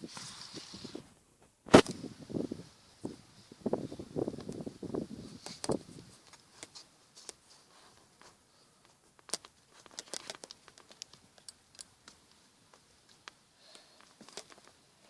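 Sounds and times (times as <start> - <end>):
small clicks and crinkling: 5.4 - 14.8.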